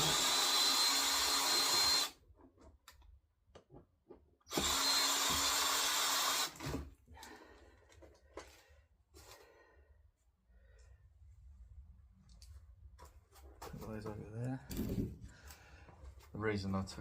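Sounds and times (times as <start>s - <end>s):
power drill whirring: 0.0s - 2.2s, 4.5s - 6.9s.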